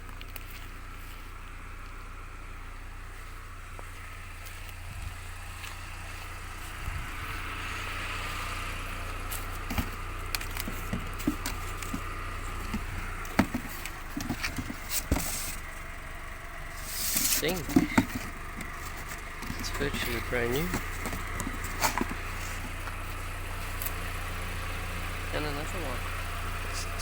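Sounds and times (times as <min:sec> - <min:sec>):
road traffic: 0:00.0 - 0:27.0
junk being handled: 0:09.0 - 0:24.0.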